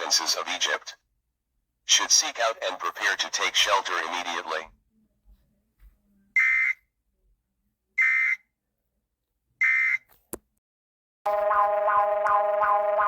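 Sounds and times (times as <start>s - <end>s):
alarm tones: 11.3s - 13.0s.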